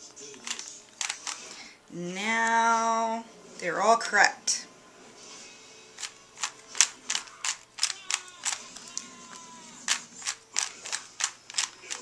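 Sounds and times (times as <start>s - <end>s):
puzzle cube plastic clicks: 0.3s - 1.6s, 6.0s - 12.0s.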